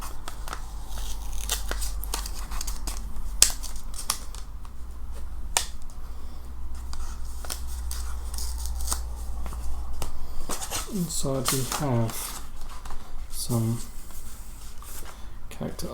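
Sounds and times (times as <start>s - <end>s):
paper envelope being opened: 0.0s - 5.8s, 6.8s - 15.1s
low steady hum: 0.0s - 15.9s.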